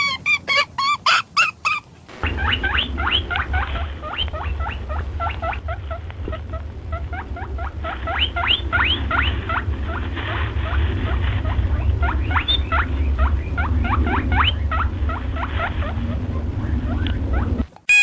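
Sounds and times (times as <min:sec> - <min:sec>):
small animal squeaking: 0:00.0 - 0:10.0, 0:10.6 - 0:16.1, 0:16.9 - 0:18.0
steady low hum: 0:01.9 - 0:18.0
repeated pitched call: 0:02.1 - 0:09.4.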